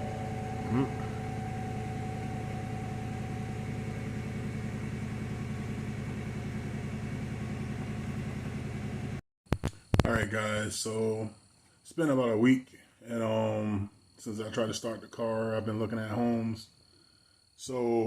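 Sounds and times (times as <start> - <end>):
car engine idling: 0.0 - 9.2.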